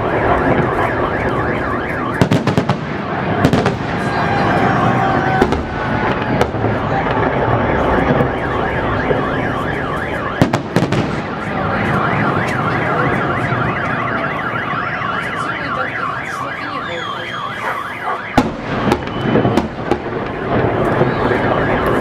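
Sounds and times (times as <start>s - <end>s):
car alarm warbling: 0.0s - 22.0s
firework bangs: 0.0s - 22.0s.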